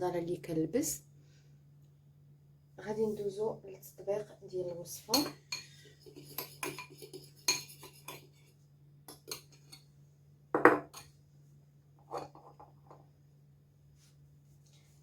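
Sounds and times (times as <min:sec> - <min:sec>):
utensil scraping a bowl: 0:05.5 - 0:08.6.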